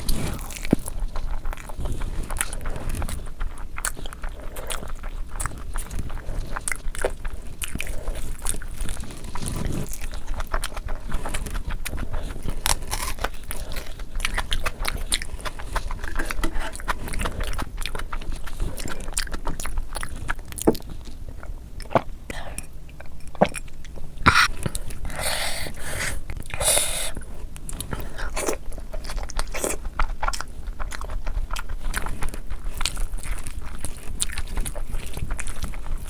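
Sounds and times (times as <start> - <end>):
chewing and biting: 0.0 - 36.0
mouth clicks and smacks: 24.3 - 27.2.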